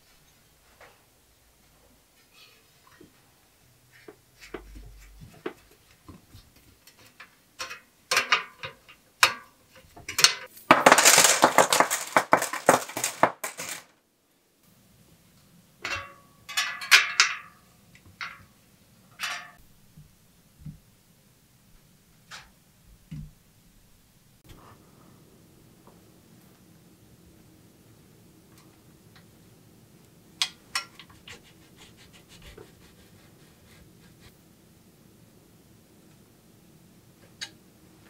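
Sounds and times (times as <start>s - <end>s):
metal bike parts clinking: 10.1s - 13.8s, 15.8s - 17.6s.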